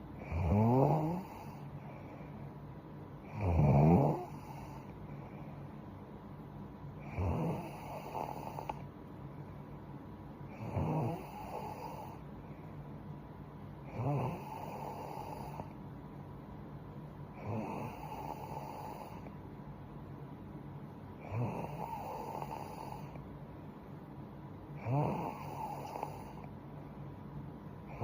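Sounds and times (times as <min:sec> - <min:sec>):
woman snoring: 0:00.2 - 0:01.7, 0:03.3 - 0:05.0, 0:07.0 - 0:08.8, 0:10.5 - 0:12.2, 0:13.9 - 0:15.7, 0:17.4 - 0:19.3, 0:21.2 - 0:23.2, 0:24.8 - 0:26.5.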